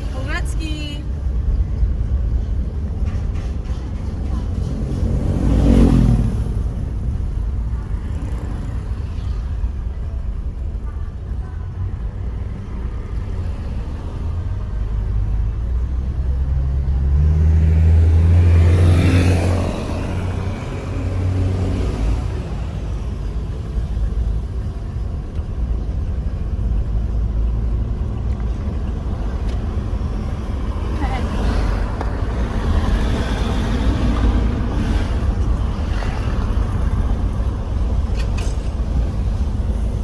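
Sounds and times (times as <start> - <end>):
low road vehicle rumble: 0.0 - 40.0
louder vehicle engine: 12.8 - 40.0.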